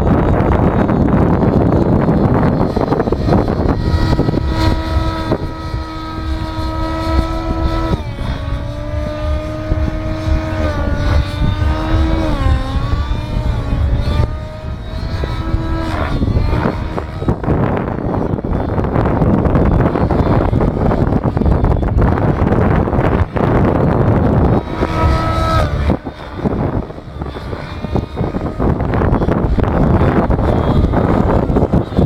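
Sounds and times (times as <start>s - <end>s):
model aircraft motor whining: 0.0s - 32.0s
wind noise on microphone: 0.0s - 32.0s.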